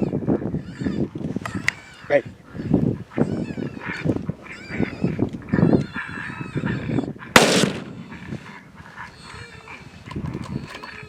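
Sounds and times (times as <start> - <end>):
loud gunshot: 7.4 - 8.5.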